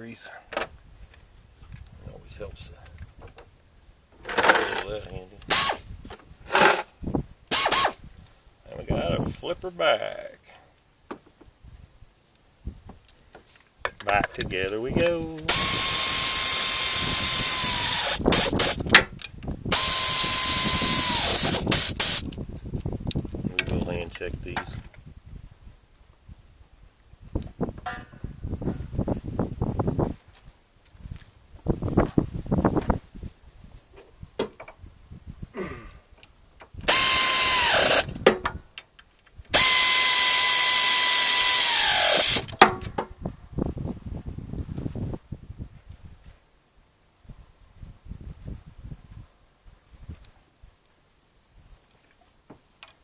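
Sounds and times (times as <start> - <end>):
clicks of tools and parts: 4.2 - 6.9, 17.5 - 22.4, 36.2 - 43.1, 52.8 - 53.0
pneumatic air ratchet whining: 5.5 - 5.8, 7.5 - 8.0, 15.5 - 19.0, 19.7 - 22.3, 36.8 - 38.2, 39.5 - 42.5
trigger blips: 19.7 - 22.4, 36.9 - 38.2, 39.6 - 42.5.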